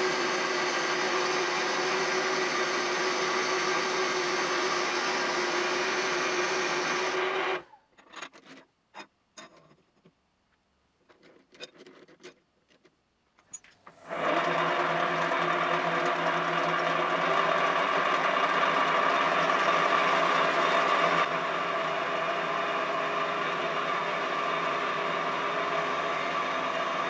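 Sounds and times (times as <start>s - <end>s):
machine tool motor whining: 0.0s - 7.8s, 13.6s - 27.0s
metallic clicks and knocks: 7.9s - 10.2s.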